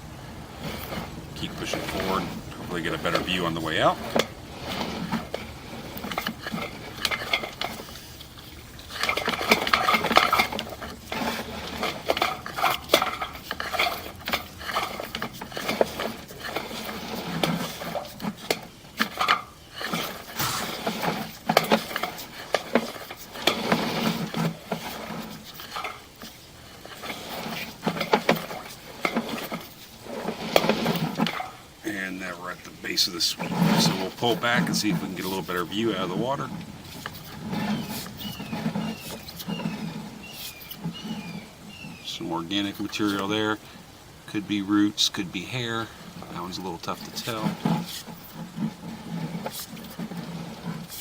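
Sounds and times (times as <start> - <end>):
cable clattering in drain pipe: 0.0 - 51.0.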